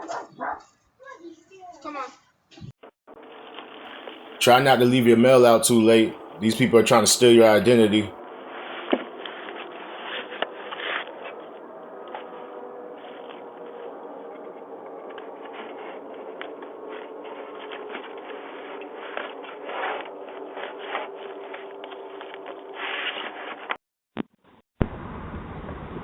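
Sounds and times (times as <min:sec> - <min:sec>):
scraping and rustling: 0:15.1 - 0:23.8.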